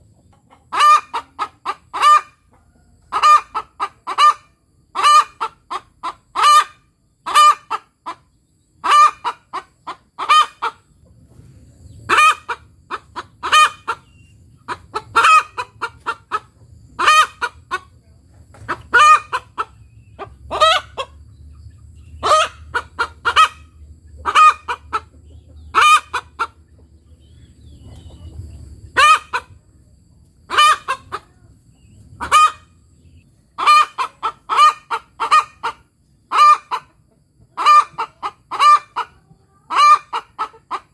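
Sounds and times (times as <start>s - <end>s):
hen cackling: 0.1s - 29.8s, 30.4s - 40.9s.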